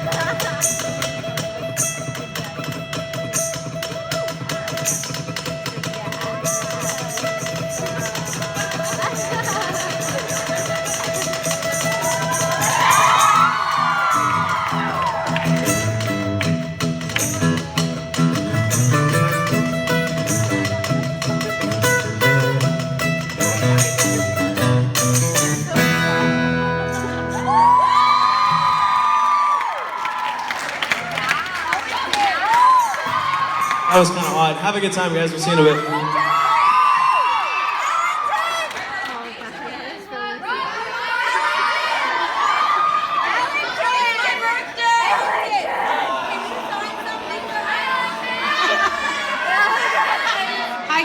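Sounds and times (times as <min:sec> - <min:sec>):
electric guitar: 0:00.0 - 0:29.3
live band playing: 0:00.0 - 0:37.1
audience cheering: 0:05.9 - 0:16.6, 0:26.5 - 0:51.0.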